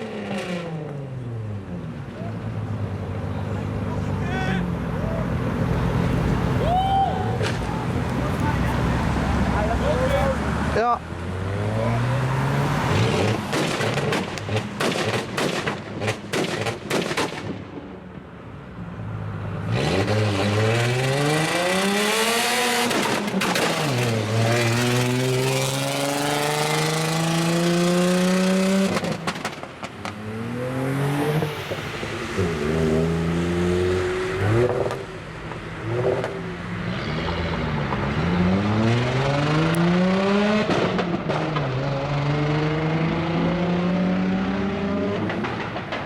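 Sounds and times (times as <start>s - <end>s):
car exhaust crackling and popping: 13.3s - 18.3s, 28.3s - 30.2s
car engine revving: 19.3s - 45.7s.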